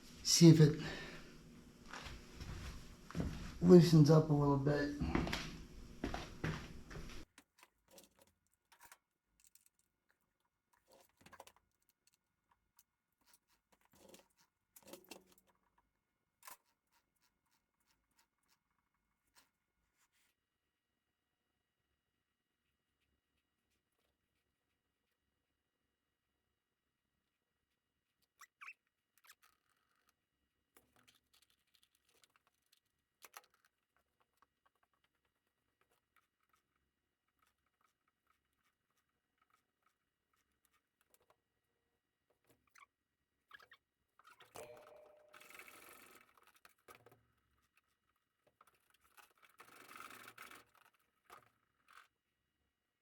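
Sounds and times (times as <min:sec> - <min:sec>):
soft handling noises: 0:00.0 - 0:20.6, 0:29.0 - 0:42.8.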